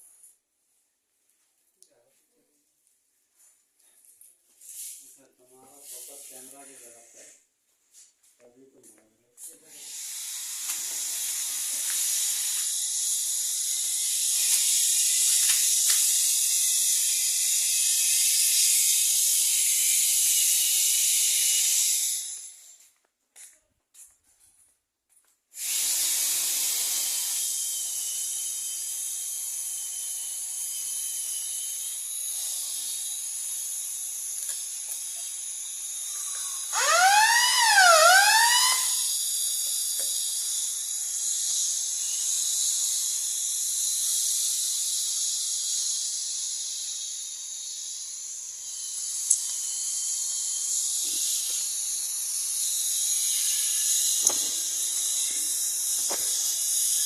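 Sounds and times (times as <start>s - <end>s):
fire alarm siren: 36.7s - 39.1s.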